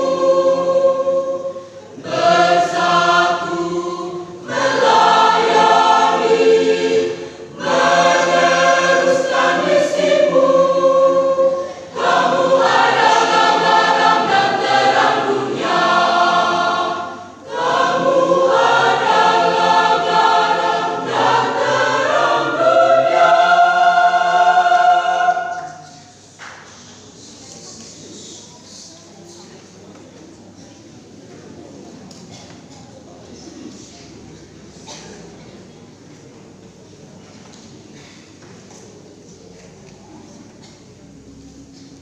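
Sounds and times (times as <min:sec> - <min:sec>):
youth choir singing: 0:00.0 - 0:26.3.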